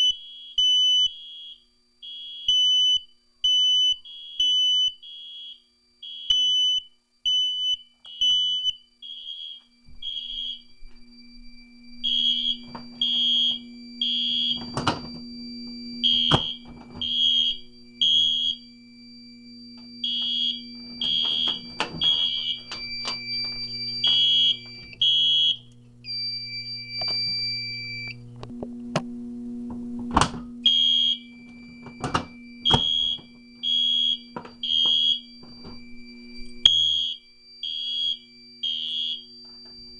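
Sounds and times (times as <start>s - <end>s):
smoke alarm beeps: 0.0s - 28.4s, 30.2s - 39.9s
steady high alarm tone: 0.0s - 39.9s
low hum: 8.3s - 39.9s.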